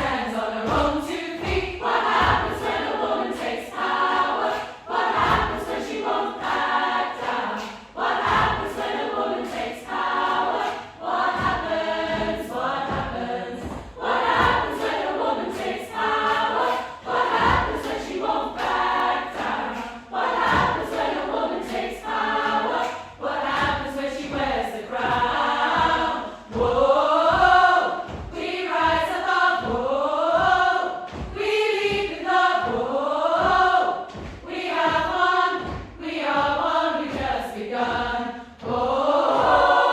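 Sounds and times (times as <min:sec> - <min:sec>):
chamber choir singing: 0:00.0 - 0:39.9.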